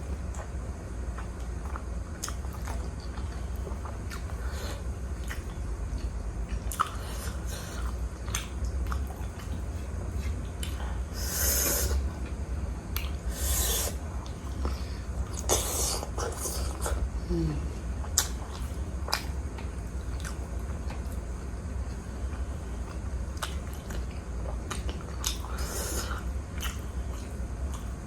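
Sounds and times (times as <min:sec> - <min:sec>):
wet chewing: 0:01.1 - 0:10.8, 0:18.0 - 0:28.0.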